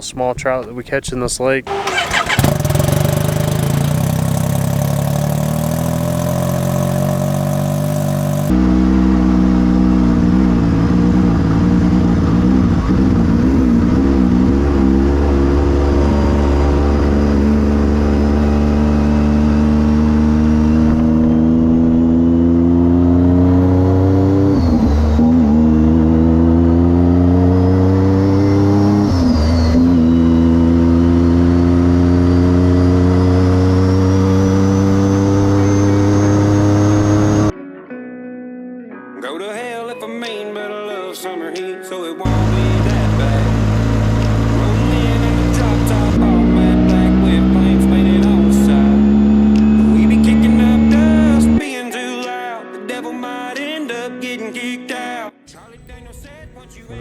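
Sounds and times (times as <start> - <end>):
vehicle engine accelerating: 1.7 - 37.5, 42.3 - 51.6.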